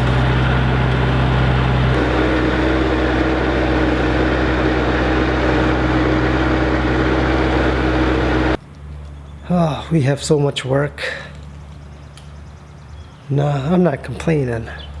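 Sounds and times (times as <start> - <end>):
motor humming steadily: 0.0 - 8.6.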